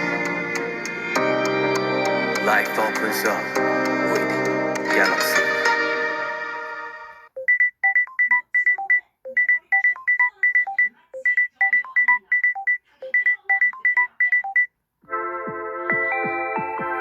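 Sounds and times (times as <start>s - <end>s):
phone ringtone beeps: 7.4s - 14.7s.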